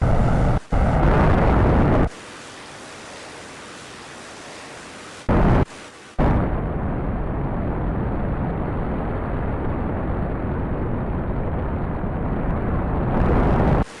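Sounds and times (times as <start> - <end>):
rocket engines rumbling: 0.0 - 2.1.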